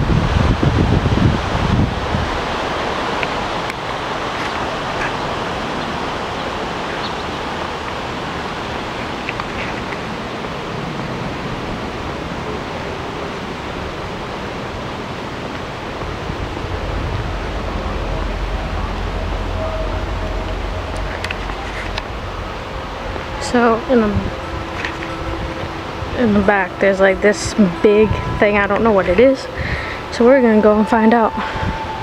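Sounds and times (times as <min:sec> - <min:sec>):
low rumble: 0:15.7 - 0:32.0.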